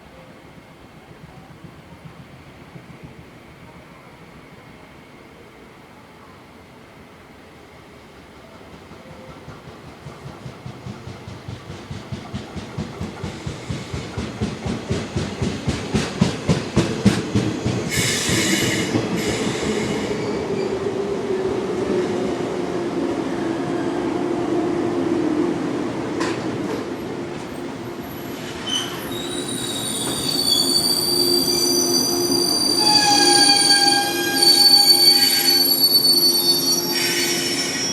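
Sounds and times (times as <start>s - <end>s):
train rumble with low hum: 0.1s - 5.1s, 7.2s - 36.0s
train wheels clacking over rail joints: 8.6s - 20.0s, 26.2s - 27.8s.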